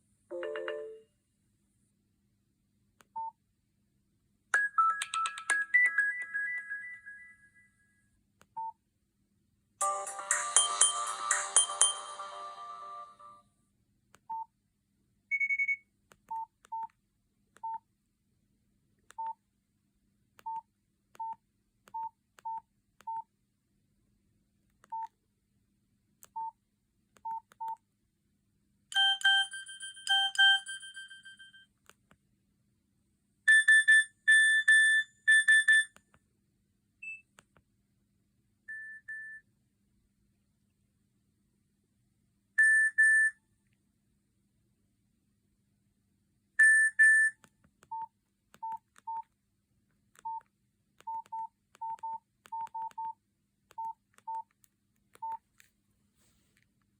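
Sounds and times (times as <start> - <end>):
phone key-press beeps: 15.3 - 16.9, 27.2 - 27.8, 46.6 - 49.3, 50.2 - 50.4, 51.0 - 54.5, 55.1 - 55.4.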